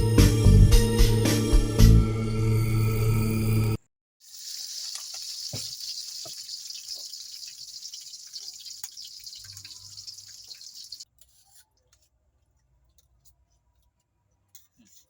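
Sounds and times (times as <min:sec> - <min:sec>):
water dripping: 0:04.2 - 0:11.0
water running: 0:04.2 - 0:11.0.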